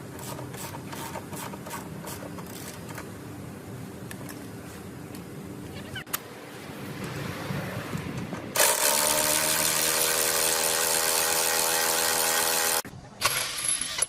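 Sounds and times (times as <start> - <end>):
pneumatic impact wrench whirring: 8.5 - 14.0.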